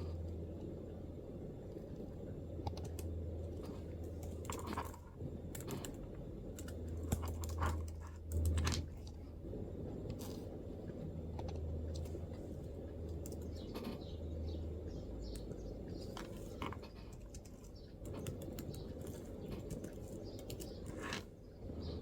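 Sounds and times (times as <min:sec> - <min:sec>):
low hum: 0:00.0 - 0:22.0
laptop keyboard typing: 0:01.7 - 0:09.2, 0:11.2 - 0:14.2, 0:14.9 - 0:21.3.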